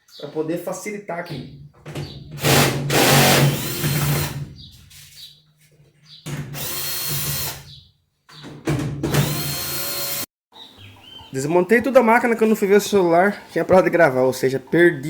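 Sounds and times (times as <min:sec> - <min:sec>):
electric screwdriver whirring: 0:06.6 - 0:07.6, 0:09.2 - 0:10.3.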